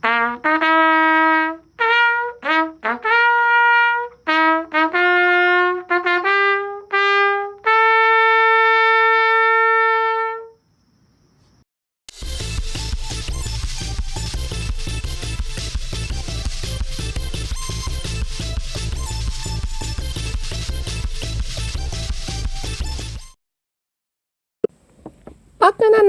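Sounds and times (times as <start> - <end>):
solo trumpet melody: 0.0 - 10.6
loud electronic music: 12.1 - 23.3.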